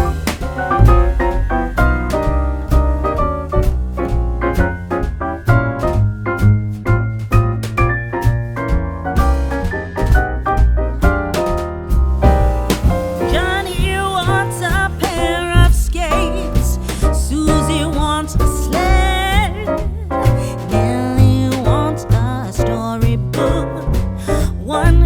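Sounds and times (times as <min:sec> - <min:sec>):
keyboard chords over beat: 0:00.0 - 0:03.9
person singing: 0:13.3 - 0:25.0.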